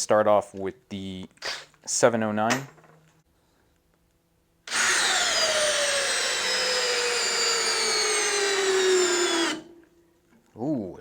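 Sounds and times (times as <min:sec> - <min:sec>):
cordless drill driving a screw: 0:04.7 - 0:09.7.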